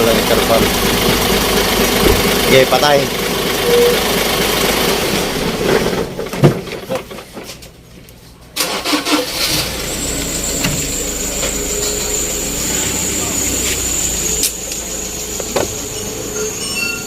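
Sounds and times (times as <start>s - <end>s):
diesel engine running: 0.0s - 17.0s
engine cranking: 8.6s - 17.0s.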